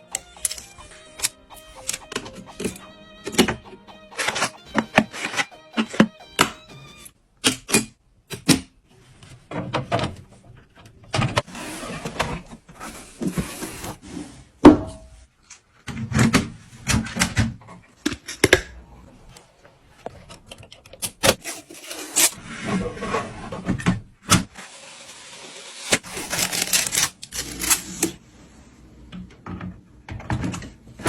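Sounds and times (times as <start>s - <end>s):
computer parts clicking and knocking: 0.1s - 6.6s.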